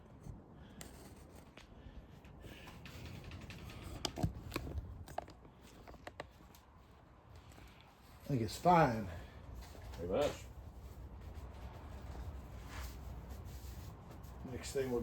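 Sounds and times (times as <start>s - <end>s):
light clicks and knocks: 1.6s - 6.6s
handling tools and engine parts: 2.3s - 6.8s.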